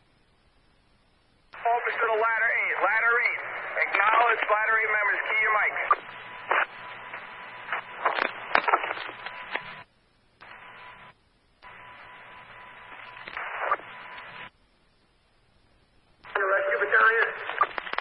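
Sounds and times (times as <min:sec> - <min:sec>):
radio static hiss: 0:00.0 - 0:18.0
radio keying clicks and pops: 0:05.9 - 0:09.8, 0:12.9 - 0:14.3, 0:17.5 - 0:18.0.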